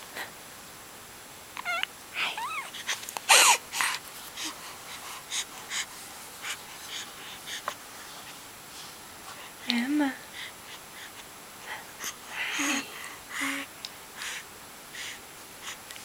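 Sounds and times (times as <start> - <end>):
baby squealing: 1.6 - 1.8, 2.4 - 2.7
baby breathy huffs: 2.2 - 7.8, 10.3 - 15.8.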